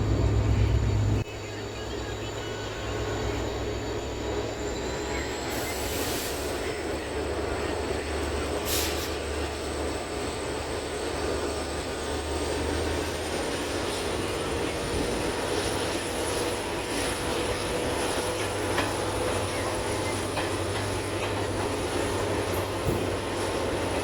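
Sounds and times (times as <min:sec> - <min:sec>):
train wheels rumbling: 0:00.0 - 0:01.2, 0:02.6 - 0:24.0
high whine: 0:00.0 - 0:12.3.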